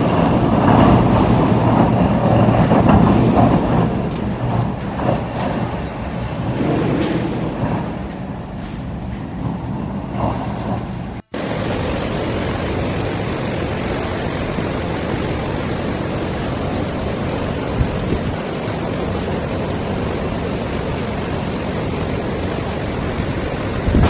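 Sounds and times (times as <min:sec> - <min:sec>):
floodwater rushing: 0:11.3 - 0:24.0.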